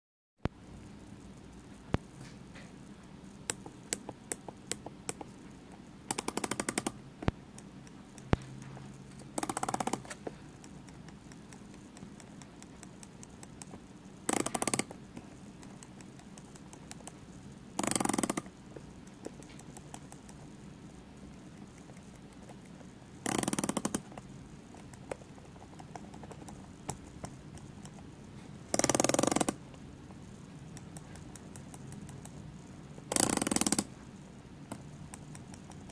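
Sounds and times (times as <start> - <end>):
watch bezel clicking: 6.1 - 7.0, 14.3 - 15.0.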